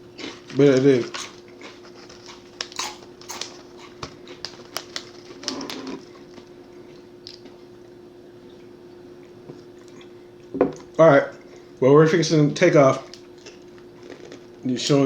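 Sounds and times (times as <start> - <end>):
crunching pork rinds: 0.0 - 7.6, 12.8 - 15.0
faint steady hum: 0.0 - 15.0.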